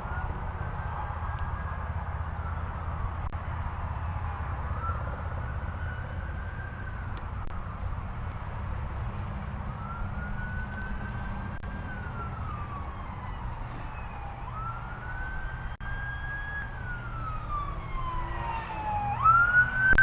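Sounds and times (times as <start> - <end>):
steady low rumble: 0.0 - 15.9
emergency vehicle siren wailing: 0.0 - 20.0.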